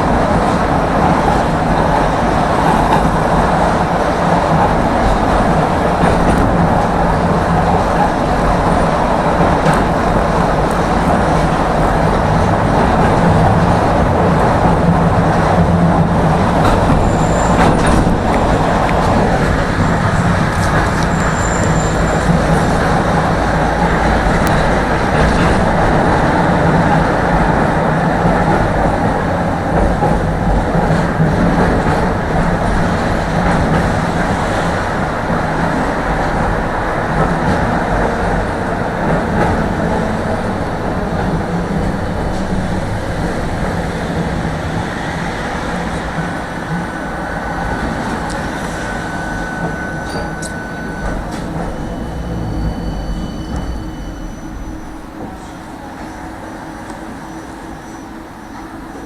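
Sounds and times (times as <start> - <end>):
tram rolling on rails: 0.0 - 59.0
high wheel squeal: 16.7 - 25.7, 44.8 - 58.8.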